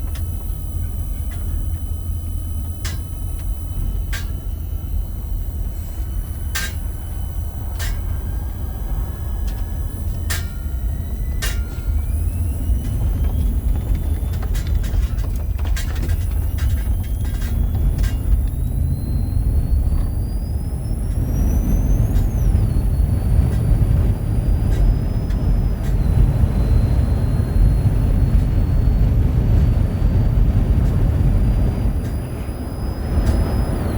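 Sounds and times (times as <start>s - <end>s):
faint high whine: 0.0s - 33.9s
road and wind rumble: 0.0s - 33.9s.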